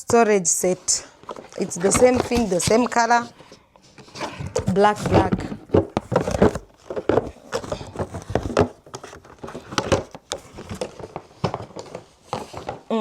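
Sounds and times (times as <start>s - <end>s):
objects clicking and knocking: 4.0s - 12.9s.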